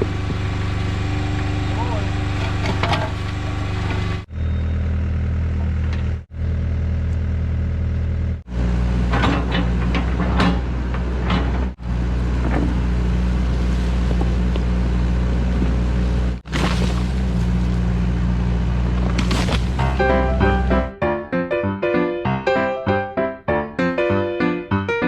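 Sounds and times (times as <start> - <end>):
excavator diesel engine running: 0.0 - 21.2
metal clanks and scrapes: 2.3 - 4.1, 9.0 - 14.5.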